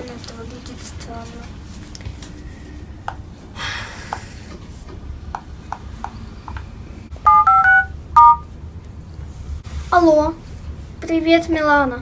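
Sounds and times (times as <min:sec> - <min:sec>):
touch-tone dialing beeps: 0:07.3 - 0:08.4.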